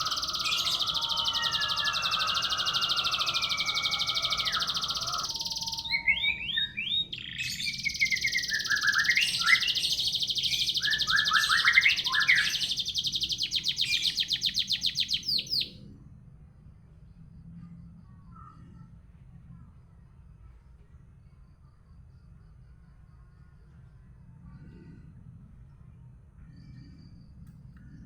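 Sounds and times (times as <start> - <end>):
canary singing trills: 0.0 - 15.7.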